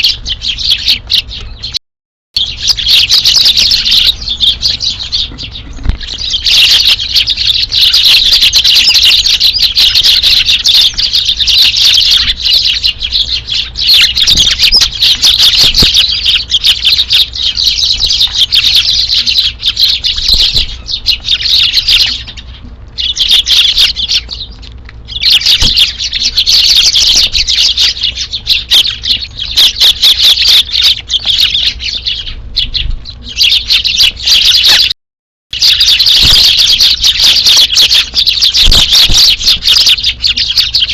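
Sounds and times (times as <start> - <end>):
flock of sparrows chirping: 0.0 - 1.8, 2.4 - 40.9.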